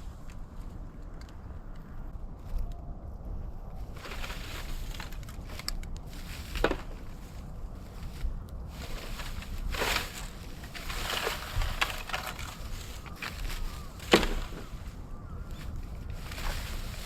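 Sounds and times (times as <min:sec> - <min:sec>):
bamboo fire crackling and popping: 0:04.0 - 0:17.0.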